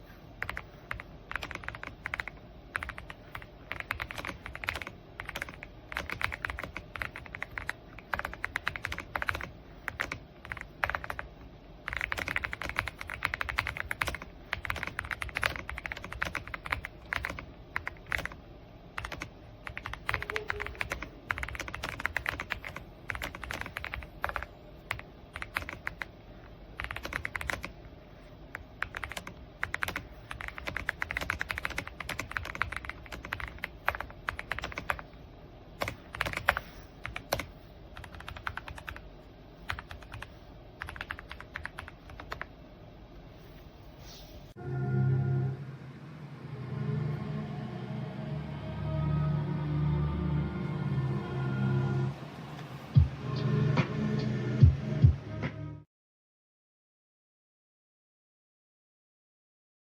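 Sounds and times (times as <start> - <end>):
mechanical keyboard typing: 0.4 - 18.4, 19.0 - 26.1, 26.8 - 27.8, 28.5 - 35.1, 35.8 - 39.0, 39.6 - 42.5.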